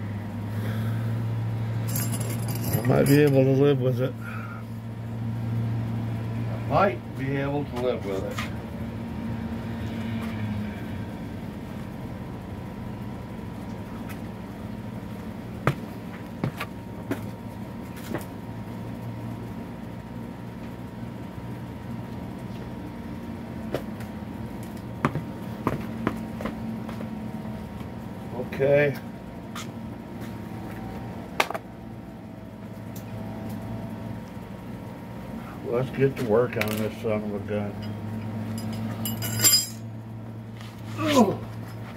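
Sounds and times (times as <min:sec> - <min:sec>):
steady mechanical hum: 0:00.0 - 0:41.9.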